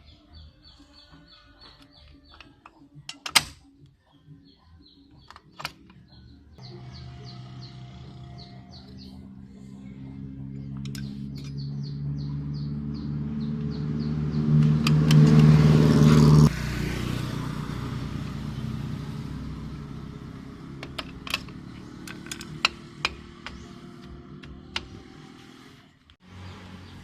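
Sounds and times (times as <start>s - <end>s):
vehicle engine running: 6.1s - 27.0s.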